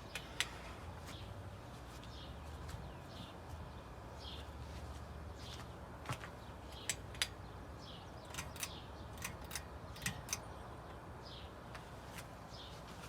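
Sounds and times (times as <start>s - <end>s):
ceiling fan humming: 0.0s - 13.0s
sharp clicks and ticks: 8.2s - 10.5s.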